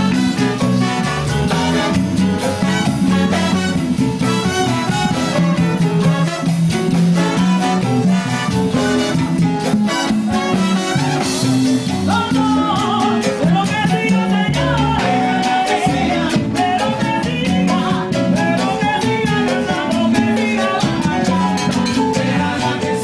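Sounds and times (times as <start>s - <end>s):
salsa band music: 0.0s - 23.0s
person singing: 12.0s - 23.0s.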